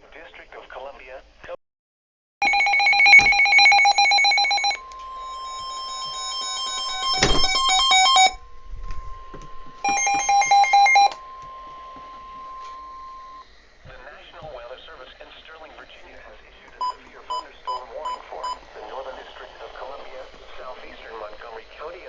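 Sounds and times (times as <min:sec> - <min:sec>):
warbling data tones: 0:02.4 - 0:13.5
steady alarm tone: 0:02.4 - 0:13.6.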